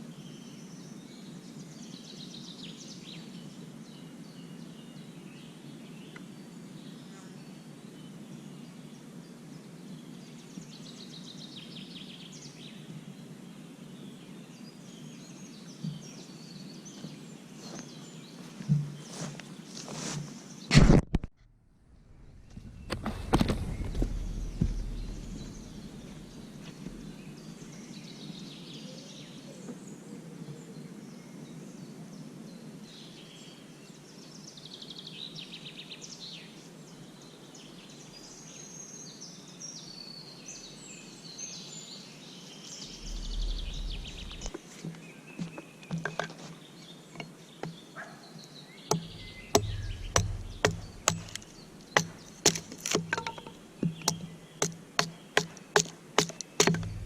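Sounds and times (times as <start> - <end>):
woodland background: 0.0 - 57.0
small birds chirping: 13.9 - 20.7, 22.2 - 30.8, 33.0 - 57.0
sharp repeated knocks: 48.9 - 57.0.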